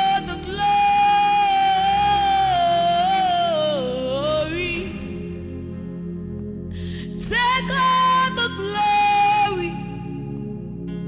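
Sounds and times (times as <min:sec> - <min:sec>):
person singing a long note: 0:00.0 - 0:05.3.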